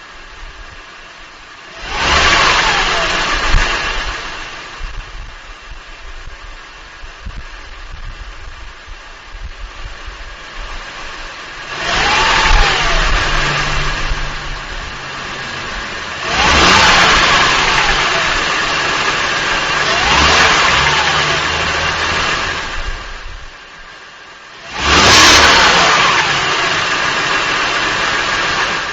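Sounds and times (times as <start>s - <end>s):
engine revving: 1.6s - 5.4s, 10.1s - 23.6s, 24.4s - 28.9s
car engine knocking: 10.8s - 23.5s.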